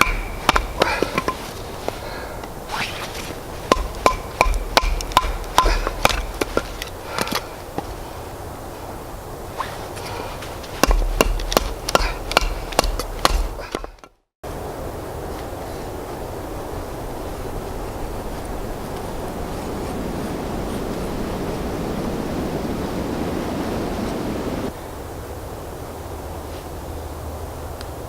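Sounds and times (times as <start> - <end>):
sharp chopping knocks: 0.0 - 1.4, 3.7 - 7.4, 10.8 - 14.1
steady rushing noise: 0.0 - 13.8, 14.4 - 28.0.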